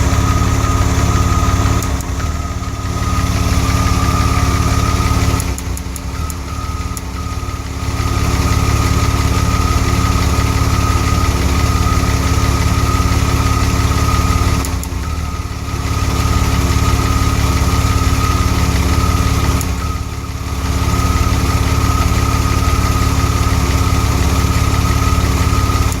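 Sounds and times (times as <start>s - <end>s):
high whine: 0.0s - 14.6s
car engine idling with misfire: 0.0s - 26.0s.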